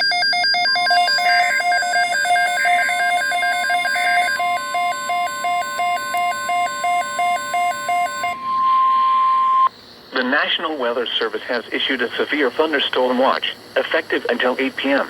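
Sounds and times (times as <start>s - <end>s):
warbling electronic data tones: 0.0s - 9.7s.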